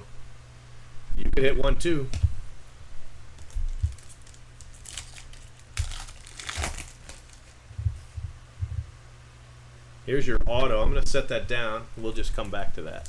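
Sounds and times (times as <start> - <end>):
foil wrapper crinkling and tearing: 3.3 - 7.6.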